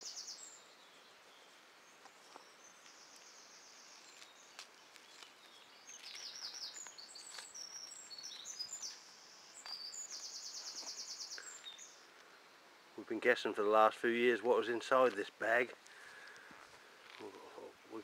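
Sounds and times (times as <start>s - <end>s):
songbirds singing: 0.0s - 18.0s
faint clicks: 15.8s - 17.3s.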